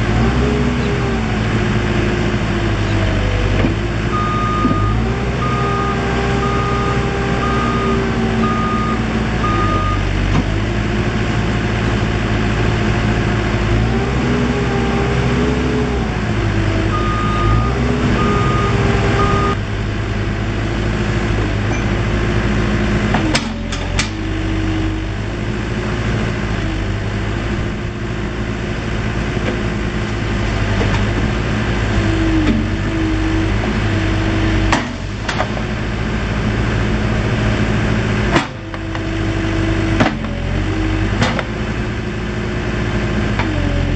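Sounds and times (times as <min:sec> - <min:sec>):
diesel engine running: 0:00.0 - 0:43.9
reverse alarm beeping: 0:04.1 - 0:10.1, 0:16.9 - 0:19.6.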